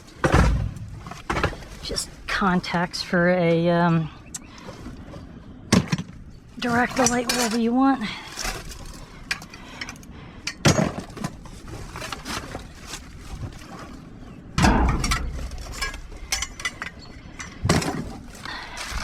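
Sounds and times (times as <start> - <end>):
debris clinking in metal dumpster: 10.6 - 12.6, 14.6 - 19.0.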